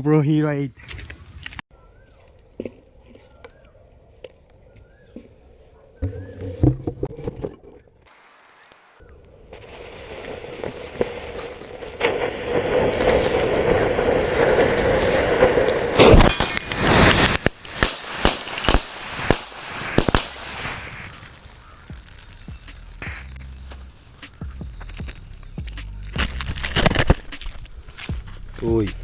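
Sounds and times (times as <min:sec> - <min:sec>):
crackling hiss: 0:08.1 - 0:29.0
firecrackers banging: 0:09.6 - 0:28.4
sharp cracks: 0:10.6 - 0:28.3.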